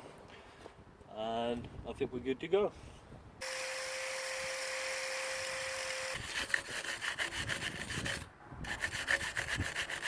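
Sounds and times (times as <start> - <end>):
wire brush scrubbing metal: 6.1 - 10.0.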